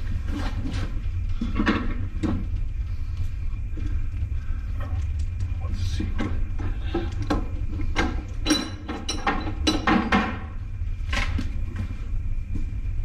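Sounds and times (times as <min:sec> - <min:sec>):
steady low rumble: 0:00.0 - 0:13.0
metal clanks and knocks: 0:05.9 - 0:11.8.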